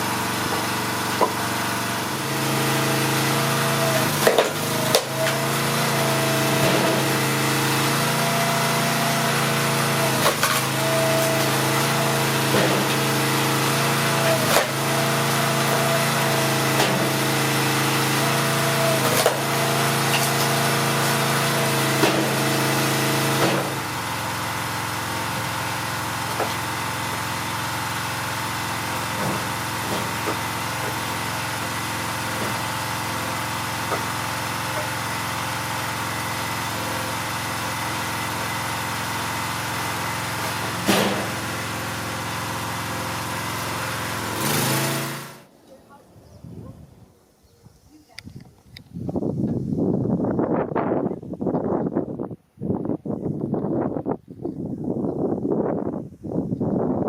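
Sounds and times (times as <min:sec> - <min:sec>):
small gasoline engine running: 0:00.0 - 0:46.0
sharp engine knocks: 0:00.4 - 0:01.8, 0:04.0 - 0:08.2, 0:09.8 - 0:24.0, 0:28.9 - 0:35.0, 0:40.4 - 0:41.6.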